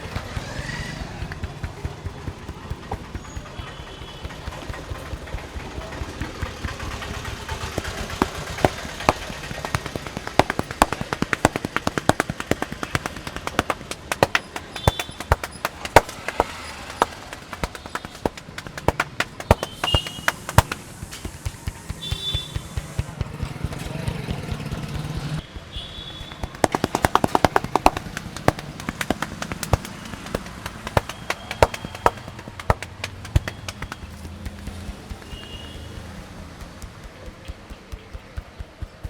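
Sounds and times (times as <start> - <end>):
hands slapping and clicking on head: 0.0 - 39.0
street noise: 0.0 - 39.0.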